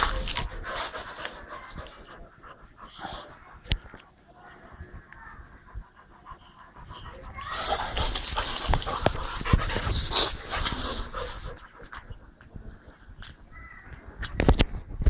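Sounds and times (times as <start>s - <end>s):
puppy panting: 0.0s - 4.2s, 5.4s - 12.4s.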